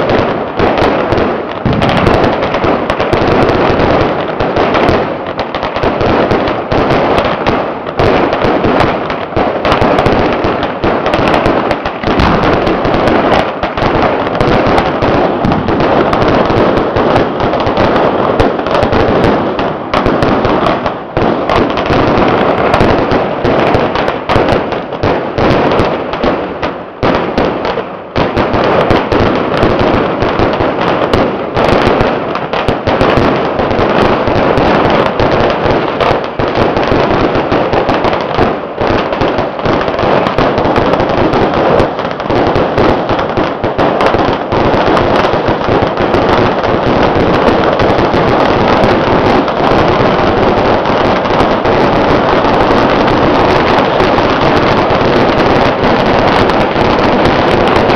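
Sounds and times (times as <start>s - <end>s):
firecrackers crackling: 0.0s - 57.9s.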